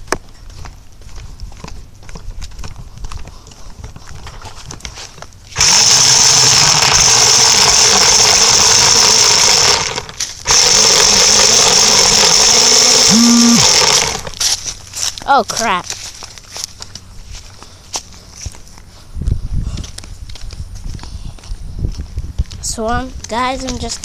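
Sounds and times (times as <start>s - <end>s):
electric motor whine: 5.5s - 14.4s.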